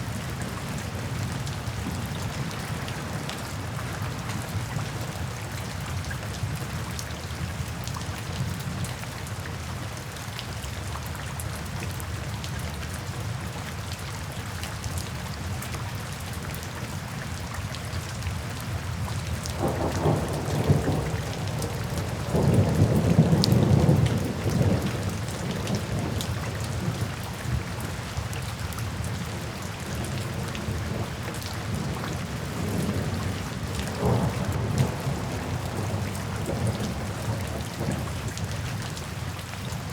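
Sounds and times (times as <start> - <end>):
heavy rain falling: 0.0 - 39.9
thunder rumbling: 19.6 - 27.1, 31.7 - 38.4.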